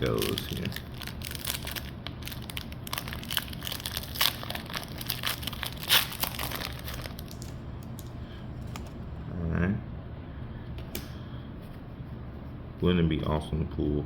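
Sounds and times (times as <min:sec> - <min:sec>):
foil wrapper crinkling: 0:00.0 - 0:09.0.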